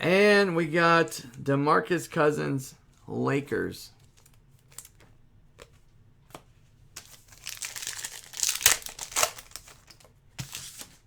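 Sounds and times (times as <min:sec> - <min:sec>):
packaging crinkling and rustling: 0:04.0 - 0:11.0
sharp crackle of packaging: 0:07.0 - 0:11.0.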